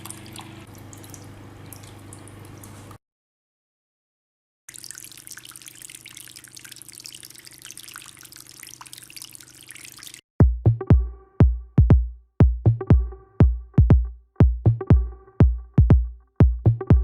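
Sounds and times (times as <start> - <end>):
fountain water trickling: 0.0 - 2.8, 4.7 - 10.2
electronic dance music: 10.6 - 17.0.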